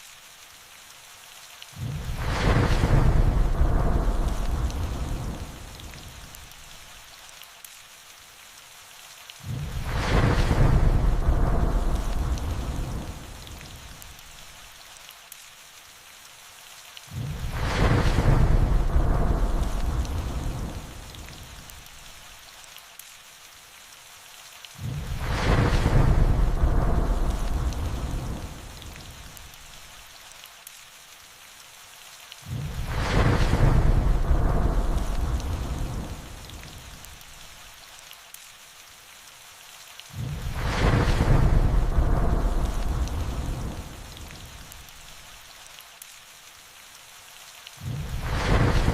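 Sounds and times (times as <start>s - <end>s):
steady rain: 0.0s - 48.9s
thunderclap: 1.8s - 6.0s, 9.5s - 14.0s, 17.2s - 21.6s, 24.8s - 29.4s, 32.5s - 37.0s, 40.2s - 44.8s, 47.8s - 48.9s
thunder rumbling: 1.8s - 6.4s, 9.5s - 14.1s, 17.2s - 21.8s, 24.8s - 29.5s, 32.5s - 37.2s, 40.2s - 44.8s, 47.8s - 48.9s.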